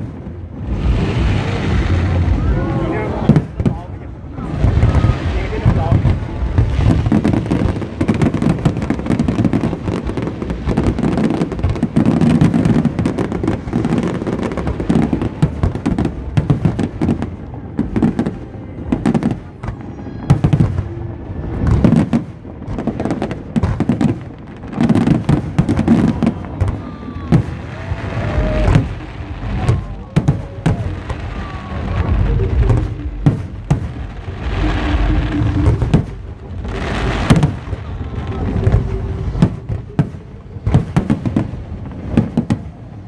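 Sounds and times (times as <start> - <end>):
low rumble: 0.0 - 11.7, 25.5 - 43.0
fireworks booming and crackling: 0.0 - 43.0.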